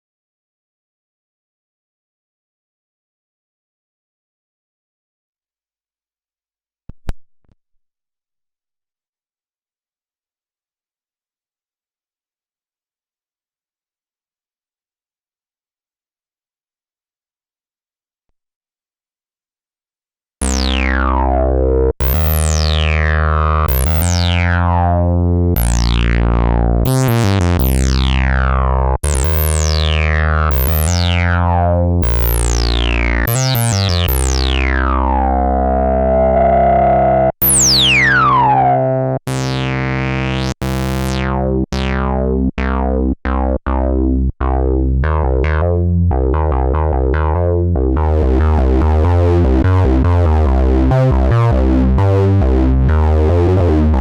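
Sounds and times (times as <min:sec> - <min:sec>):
synthesizer bass line: 0:20.4 - 0:54.0.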